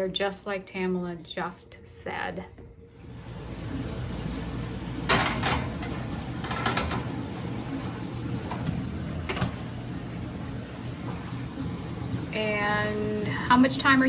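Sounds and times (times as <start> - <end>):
air fryer basket clatter: 4.9 - 10.2.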